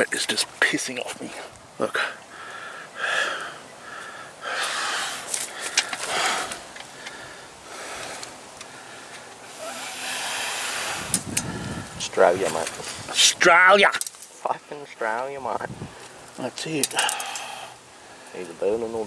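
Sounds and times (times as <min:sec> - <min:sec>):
man breathing hard: 0:02.0 - 0:12.1, 0:17.0 - 0:18.3.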